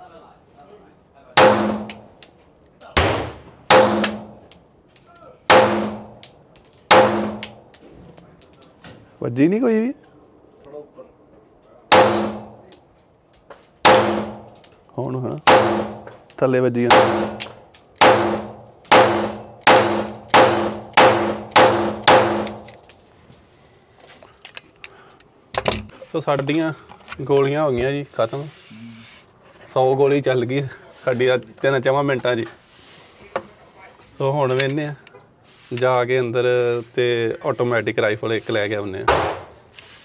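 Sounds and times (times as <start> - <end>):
pistol shots with echo: 1.4 - 2.0, 3.0 - 4.4, 5.5 - 6.2, 6.9 - 7.6, 11.9 - 12.6, 13.8 - 14.5, 15.4 - 16.1, 16.9 - 22.6.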